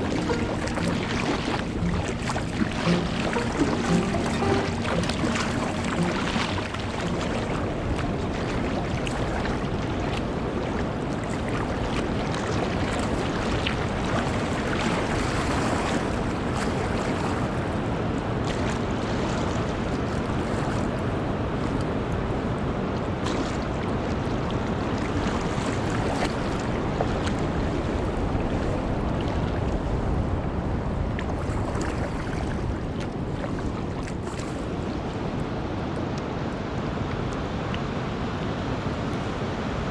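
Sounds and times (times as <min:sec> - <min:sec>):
faint splashes: 0:00.0 - 0:17.7, 0:23.2 - 0:23.8, 0:31.2 - 0:34.9
rushing water: 0:00.0 - 0:30.5, 0:31.1 - 0:39.9.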